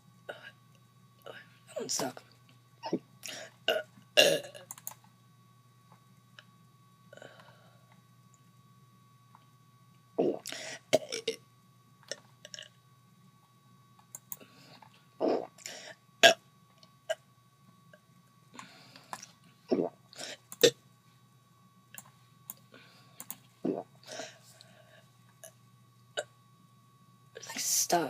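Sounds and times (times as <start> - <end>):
person burping: 2.8 - 4.7, 10.2 - 11.4, 12.5 - 12.7, 15.2 - 16.4, 19.7 - 20.0, 23.6 - 23.9
sharp clicks: 4.7 - 5.0.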